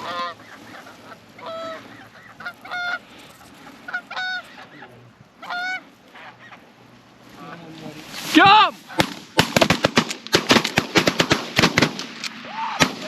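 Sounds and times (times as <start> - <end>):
goose honking: 0.0 - 9.4.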